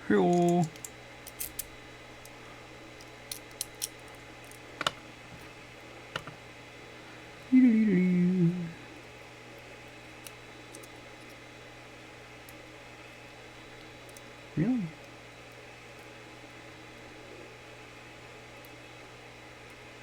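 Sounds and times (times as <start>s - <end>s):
metal clicks of lock tools: 0.3s - 2.3s
person humming hmm: 7.5s - 8.9s.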